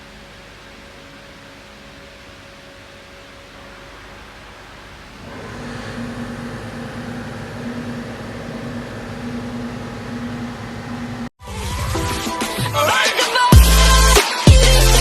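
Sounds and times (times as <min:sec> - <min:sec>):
music: 0:00.0 - 0:04.8, 0:11.4 - 0:15.0
intermittent hum: 0:04.3 - 0:11.3
mechanical running noise: 0:05.0 - 0:11.3.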